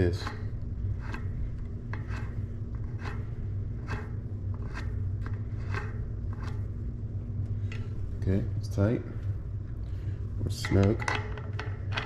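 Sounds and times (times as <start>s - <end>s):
metal scraping of threads: 0.0s - 6.7s
steady low hum: 0.0s - 12.0s.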